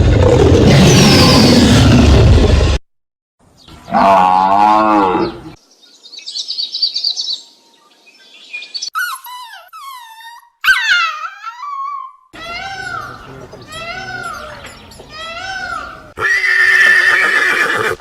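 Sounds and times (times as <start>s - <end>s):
high falling cries: 0.7s - 2.2s, 8.9s - 18.0s
bird chirping and trilling: 3.6s - 16.2s.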